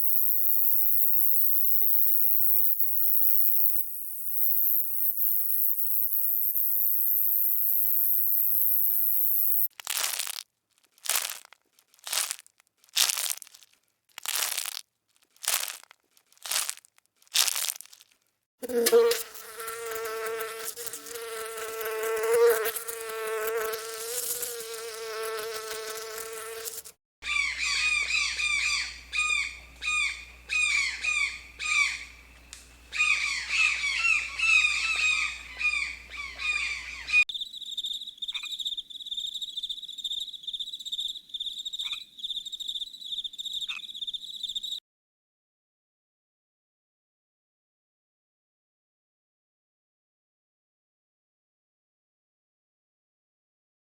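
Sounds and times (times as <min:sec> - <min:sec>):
flying insect buzzing: 0:00.0 - 0:09.7, 0:18.6 - 0:27.0
high-pitched insect trill: 0:00.0 - 0:09.7, 0:33.0 - 0:44.8
short repeated chirping calls: 0:32.9 - 0:44.8.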